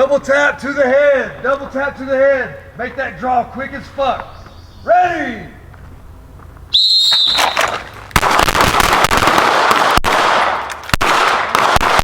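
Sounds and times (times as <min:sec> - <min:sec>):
handgun fire: 0:07.4 - 0:12.0.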